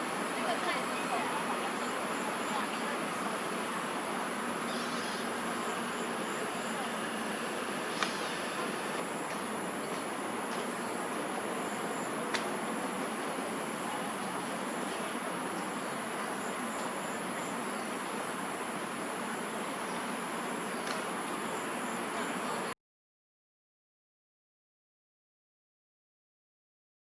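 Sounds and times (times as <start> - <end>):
outdoor background hiss: 0.0 - 22.8
high-pitched insect chorus: 0.4 - 22.6
high-pitched insect drone: 4.6 - 9.2.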